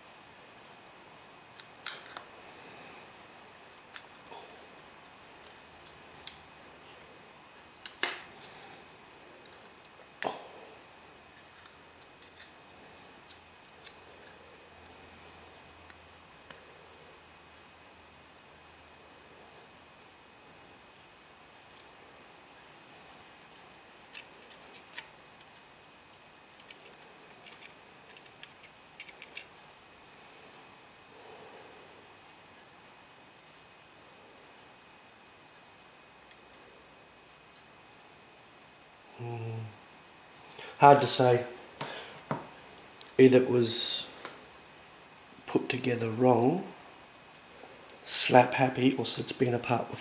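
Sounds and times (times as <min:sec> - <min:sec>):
small repair tools clicking: 0:26.6 - 0:29.5.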